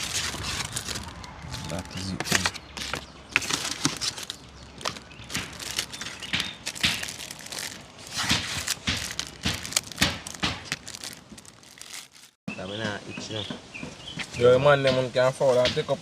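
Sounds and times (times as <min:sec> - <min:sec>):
hard crackers crunching: 0:00.0 - 0:12.4.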